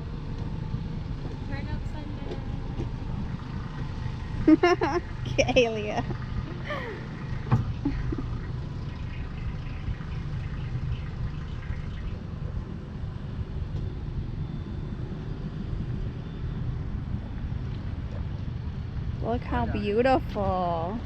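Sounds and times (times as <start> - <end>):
outboard motor droning: 0.0 - 21.0
wind: 0.0 - 21.0
water noise: 2.4 - 13.4.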